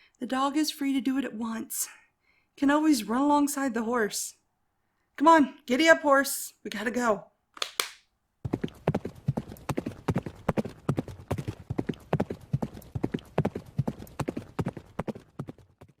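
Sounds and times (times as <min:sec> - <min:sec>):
horse hooves clip-clopping: 0:08.5 - 0:16.0.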